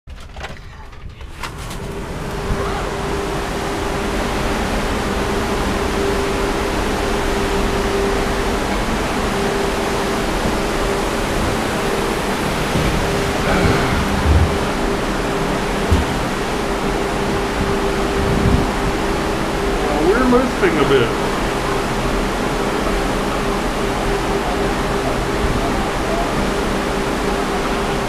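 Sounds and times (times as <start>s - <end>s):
steady low hum: 1.0s - 28.0s
strong wind rushing: 9.4s - 20.0s.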